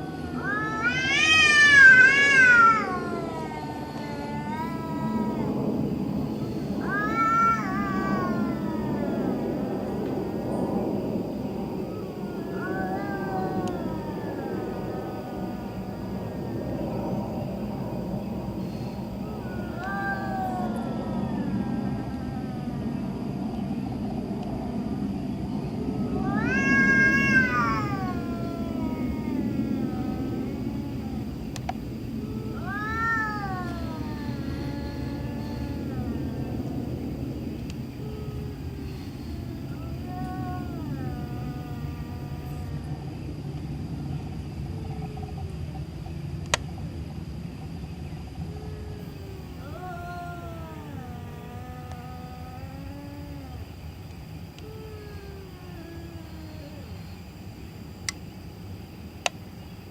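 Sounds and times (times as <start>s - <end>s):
cat yowling: 0.0s - 9.9s, 11.8s - 16.5s, 18.7s - 23.0s, 26.0s - 43.1s, 48.4s - 58.1s
low background hum: 0.0s - 59.9s
low moaning calls: 0.0s - 59.9s
steady low rumble: 0.0s - 59.9s.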